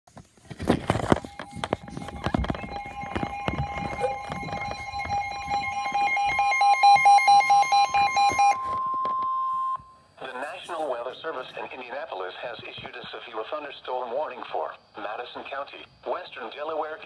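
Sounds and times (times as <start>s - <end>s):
steady high tone: 0.8s - 11.0s
beeping alarm: 0.9s - 10.2s.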